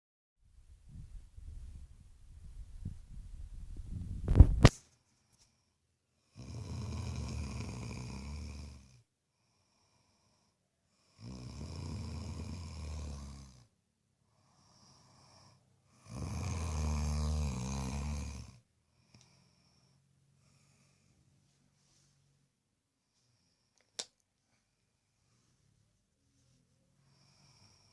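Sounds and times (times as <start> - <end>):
person snoring: 6.2 - 13.7, 14.4 - 21.1, 27.0 - 27.9.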